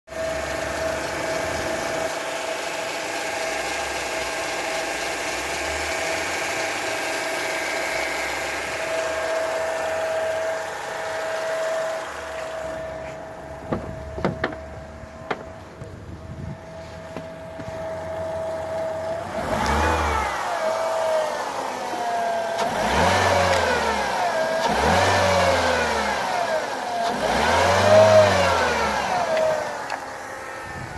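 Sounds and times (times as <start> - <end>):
car engine running: 0.1 - 30.9
power steering whine: 0.1 - 30.9
short knocks: 13.6 - 15.9.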